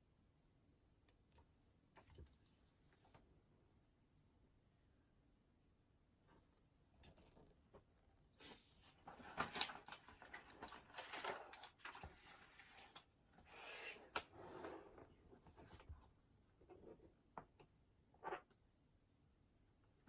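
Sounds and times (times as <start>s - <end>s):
faint rustling at desk: 6.3s - 17.2s.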